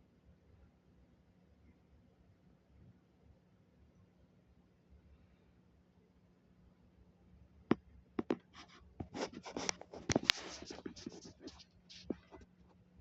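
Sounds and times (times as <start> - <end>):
objects scraping and rustling: 8.2 - 12.5.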